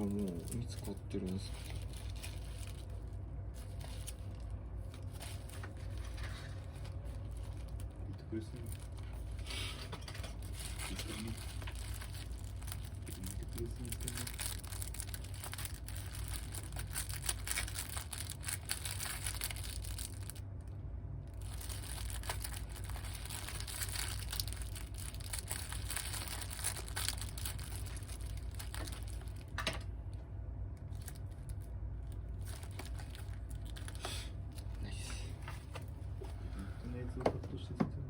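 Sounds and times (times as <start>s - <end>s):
plastic packaging crinkling: 0.0s - 9.4s, 10.1s - 36.1s
low hum: 0.0s - 38.0s.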